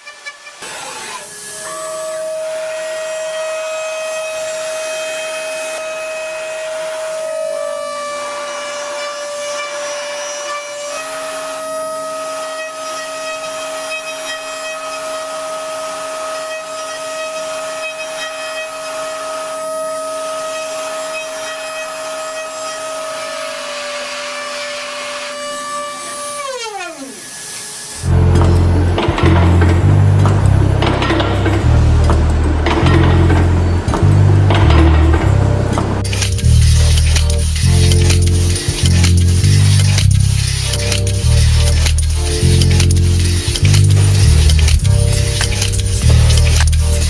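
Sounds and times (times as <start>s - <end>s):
music: 28.0s - 47.0s.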